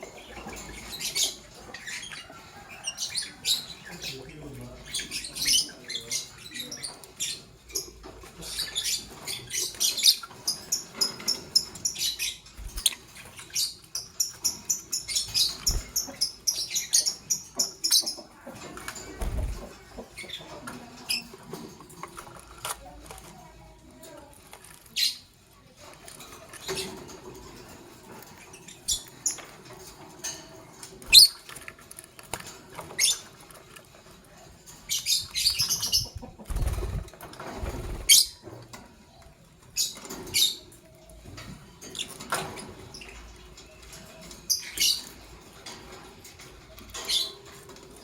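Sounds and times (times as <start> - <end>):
lovebirds chirping: 0.0 - 21.3, 31.1 - 31.4, 34.8 - 38.4.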